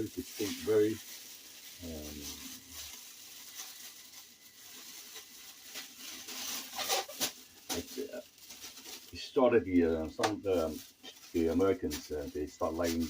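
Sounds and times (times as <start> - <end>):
faint room tone hiss: 0.0 - 13.0.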